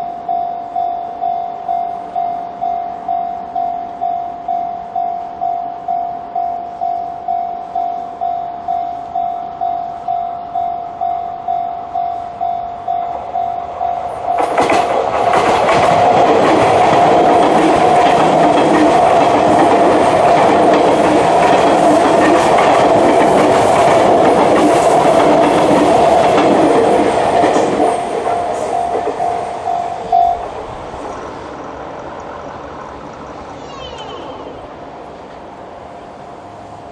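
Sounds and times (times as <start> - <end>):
level-crossing alarm bell ringing: 0.0 - 15.2, 27.8 - 30.6
train passing: 0.0 - 36.9.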